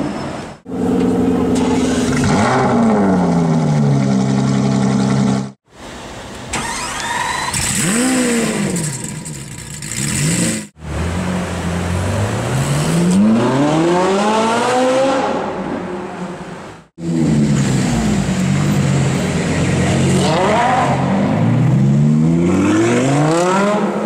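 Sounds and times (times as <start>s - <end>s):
supercar engine revving: 17.0s - 24.0s.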